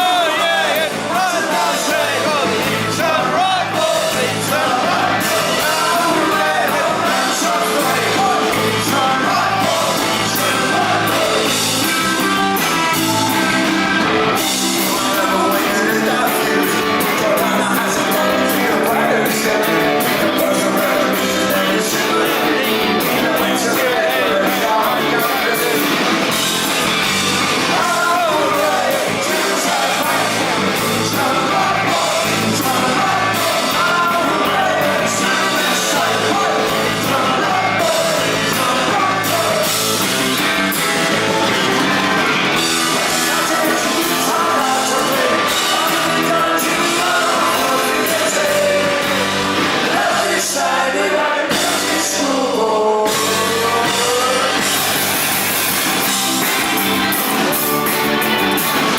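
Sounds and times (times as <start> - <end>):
person singing: 0.0 - 26.2, 27.6 - 55.7
live rock band playing: 0.0 - 58.9.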